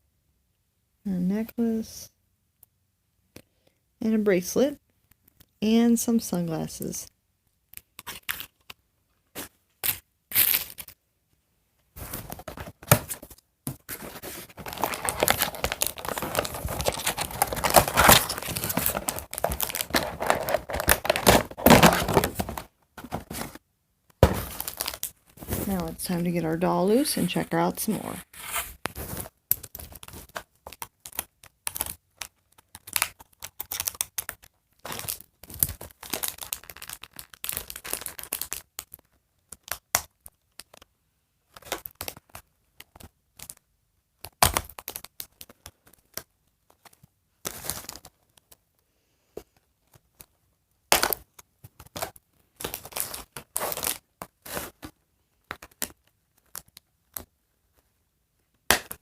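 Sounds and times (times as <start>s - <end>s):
cardboard and plastic packaging tearing: 12.0s - 23.6s, 24.2s - 26.1s, 27.3s - 39.8s, 51.8s - 54.9s.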